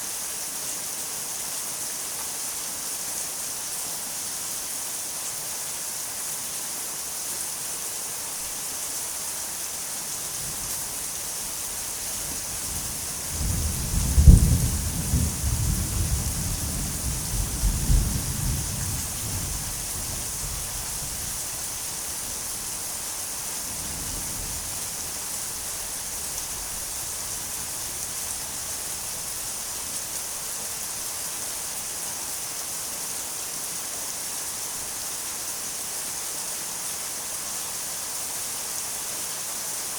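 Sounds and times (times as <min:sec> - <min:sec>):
steady rain: 0:00.0 - 0:39.9
thunder crack and rumble: 0:12.0 - 0:21.4.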